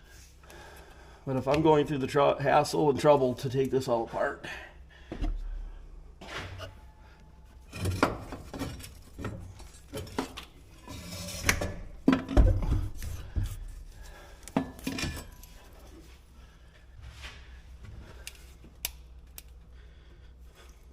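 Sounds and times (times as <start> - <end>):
tools and metal parts clinking: 7.7 - 11.3, 14.5 - 15.8.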